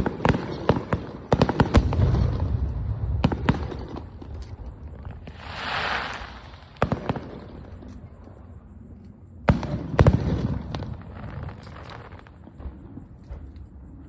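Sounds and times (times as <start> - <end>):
firework shells bursting: 1.3 - 8.1.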